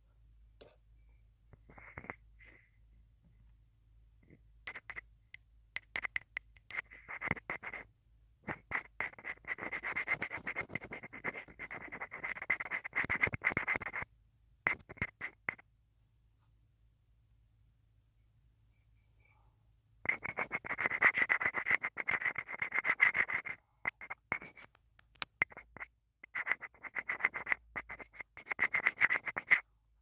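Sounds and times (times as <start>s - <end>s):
scratching on phone microphone: 1.6s - 2.6s, 4.2s - 5.1s, 5.8s - 14.1s, 14.7s - 15.6s, 20.0s - 29.7s.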